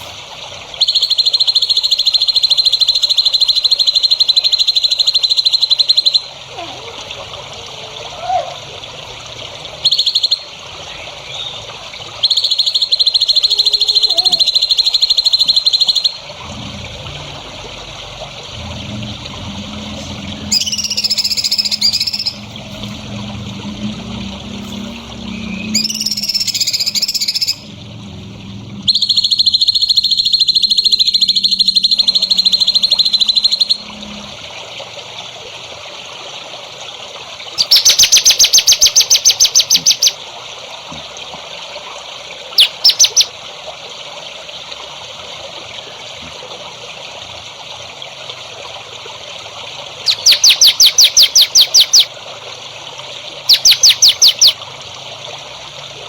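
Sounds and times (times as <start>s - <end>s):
trickle of water: 0.0s - 56.0s
songbird trilling: 0.8s - 6.3s, 9.8s - 10.5s, 12.2s - 16.2s, 20.5s - 22.5s, 25.4s - 27.7s, 28.8s - 33.9s, 37.6s - 40.2s, 42.6s - 43.3s, 50.0s - 52.1s, 53.5s - 54.6s.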